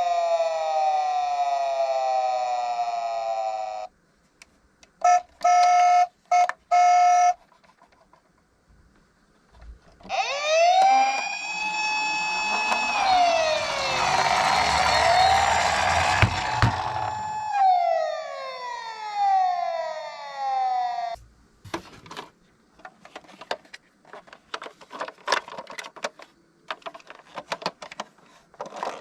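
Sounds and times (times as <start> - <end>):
toy electronic siren wailing: 0.0 - 3.9, 10.1 - 21.2.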